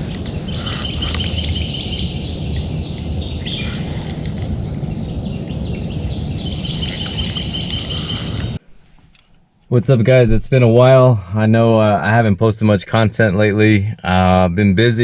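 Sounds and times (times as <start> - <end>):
songbird chirping: 0.0 - 8.6
low rumbling hiss: 0.0 - 9.0.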